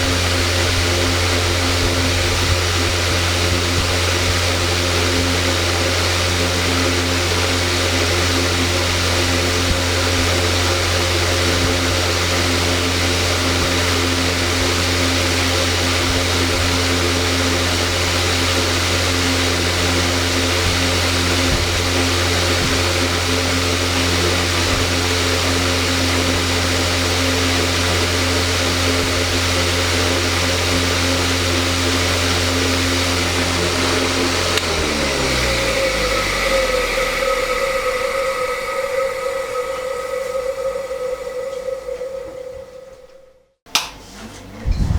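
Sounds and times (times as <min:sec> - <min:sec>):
high steady whine: 0:00.0 - 0:43.6
electric fan motor hum: 0:00.0 - 0:44.0
whoosh of moving air: 0:32.0 - 0:43.4, 0:44.6 - 0:44.9.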